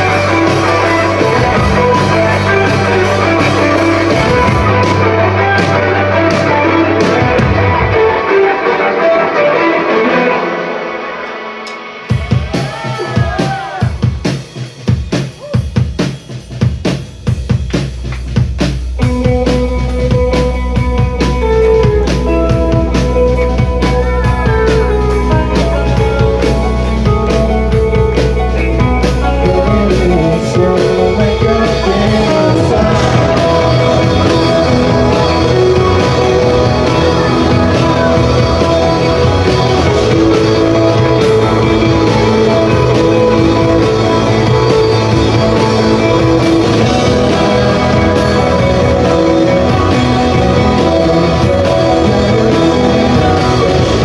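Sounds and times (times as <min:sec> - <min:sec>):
rock band playing: 0:00.0 - 0:54.0
person singing: 0:23.6 - 0:54.0.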